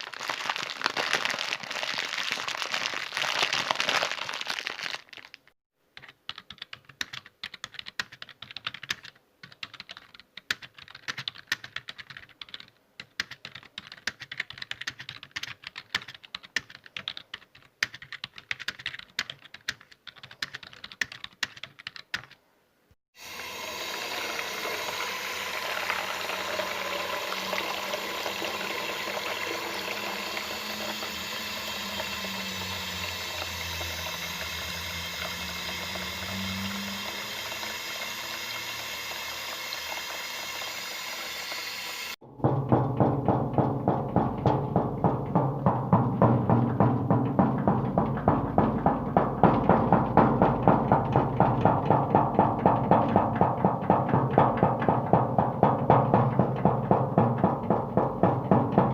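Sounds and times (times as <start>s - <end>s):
water running: 23.2s - 58.9s.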